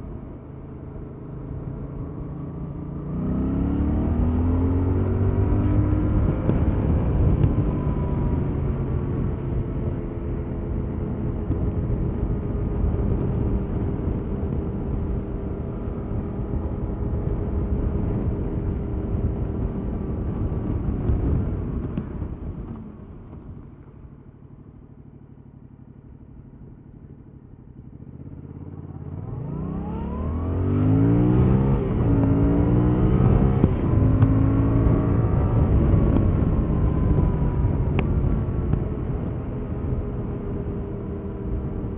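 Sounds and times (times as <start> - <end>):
motorcycle exhaust revving: 25.9 - 41.9.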